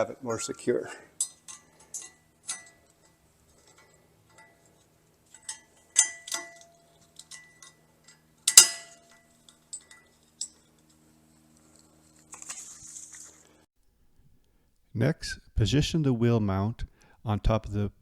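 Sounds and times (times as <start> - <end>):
metallic clicks and clinks: 1.2 - 11.0.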